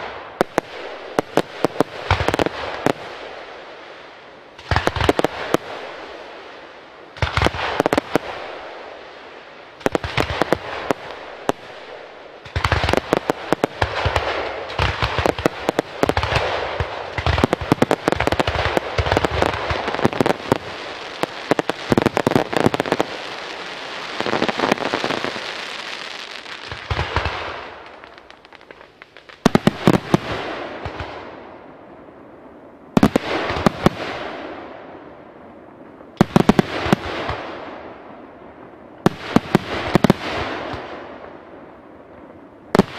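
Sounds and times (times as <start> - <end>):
fireworks crackling: 0.0 - 31.4, 39.0 - 41.2.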